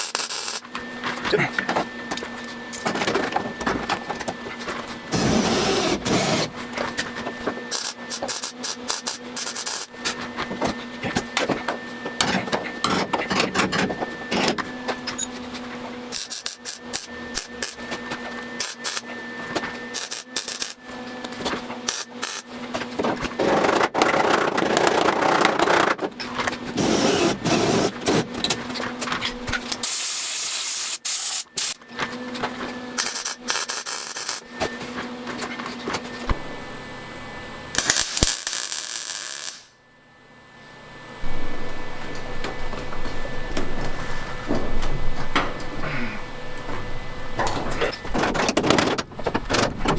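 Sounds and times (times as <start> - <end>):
welding crackling: 0.0 - 0.7, 7.7 - 9.9, 16.1 - 17.8, 18.6 - 19.1, 19.9 - 22.5, 33.0 - 34.5, 37.8 - 39.7.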